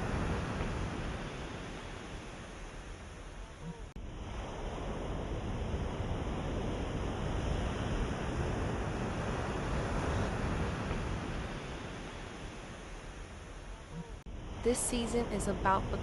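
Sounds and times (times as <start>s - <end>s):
ocean waves washing on shore: 0.0s - 16.0s.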